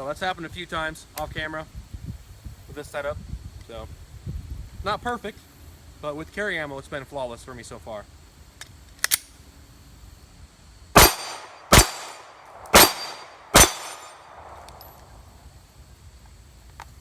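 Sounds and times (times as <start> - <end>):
pistol shots with ringing tail: 11.0 - 15.0.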